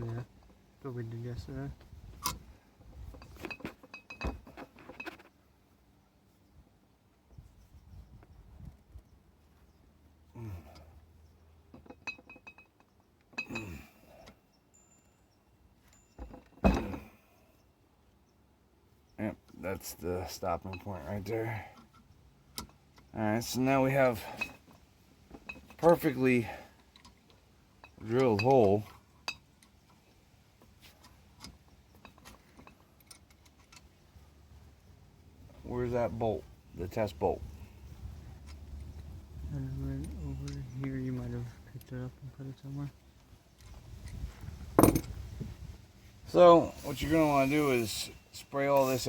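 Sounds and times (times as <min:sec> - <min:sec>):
metal tools clinking: 0:03.0 - 0:05.3, 0:11.7 - 0:17.1, 0:23.4 - 0:27.2, 0:27.8 - 0:29.5, 0:44.8 - 0:45.2, 0:46.6 - 0:49.0.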